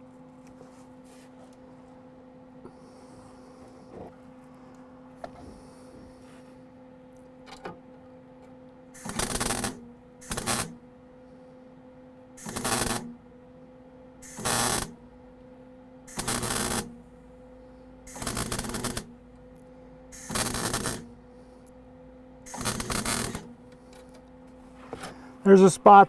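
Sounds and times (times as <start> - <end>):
steady electrical hum: 0.0 - 26.0
welding arc crackling: 9.0 - 10.8, 12.4 - 13.2, 14.2 - 15.0, 16.1 - 17.0, 18.1 - 19.3, 20.1 - 21.2, 22.5 - 23.6.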